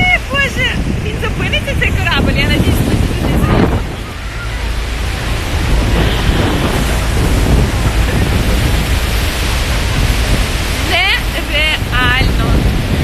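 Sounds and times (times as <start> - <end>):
faint voices: 0.0 - 9.5
waterfall roar: 0.0 - 13.0
wind buffeting microphone: 0.0 - 13.0.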